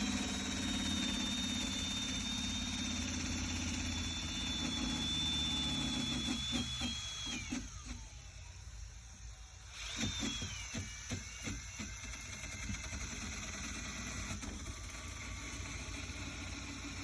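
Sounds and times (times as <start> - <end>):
power grinder grinding paint: 0.0 - 7.9.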